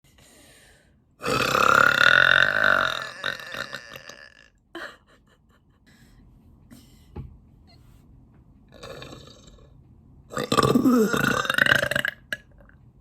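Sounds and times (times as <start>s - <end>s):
woman burping: 1.2s - 4.9s, 10.3s - 12.5s.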